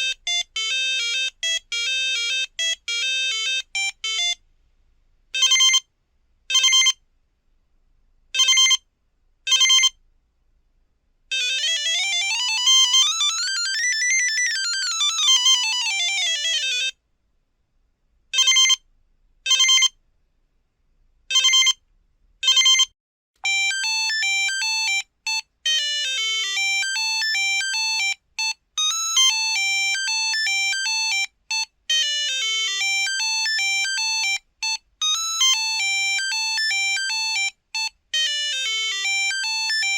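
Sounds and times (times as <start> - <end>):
bouncing ringtone melody: 0.0 - 4.4, 11.3 - 16.9, 23.5 - 39.9.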